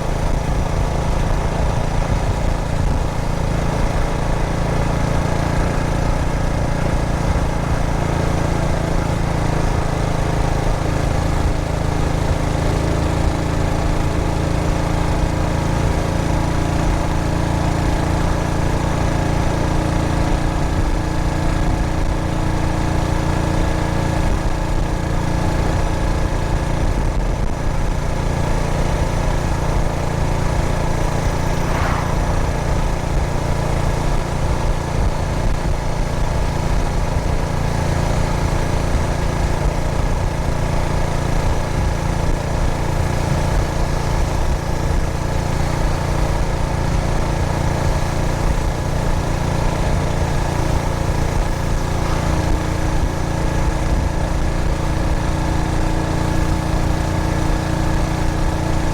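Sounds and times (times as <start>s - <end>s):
single-cylinder motorcycle engine running: 0.0s - 58.9s.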